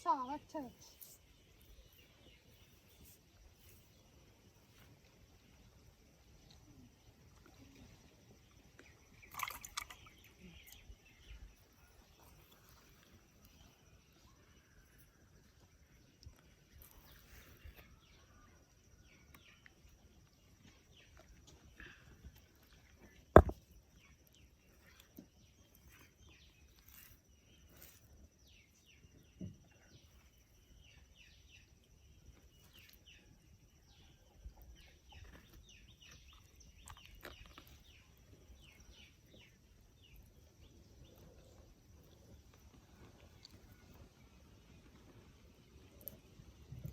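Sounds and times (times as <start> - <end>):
faint bird chirps: 0.0 - 23.2
sharp knock: 23.4 - 23.6.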